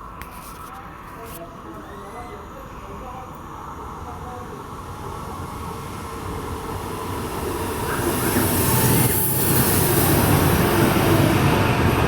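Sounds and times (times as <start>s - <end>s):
train passing close by: 3.5s - 12.0s.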